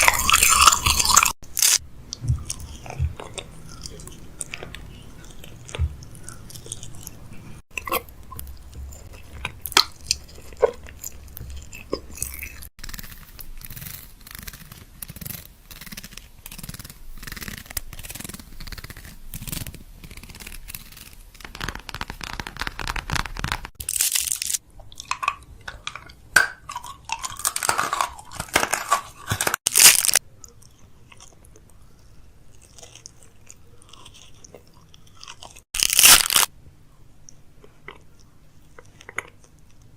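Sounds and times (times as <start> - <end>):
plastic packaging crinkling: 13.1 - 24.6, 27.3 - 30.2, 35.8 - 36.5.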